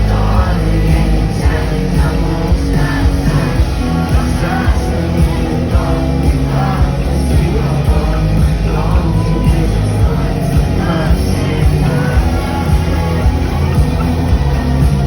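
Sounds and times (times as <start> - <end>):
drum beats: 0.0 - 15.0
heavy bass: 0.0 - 15.0
person singing: 0.0 - 15.0.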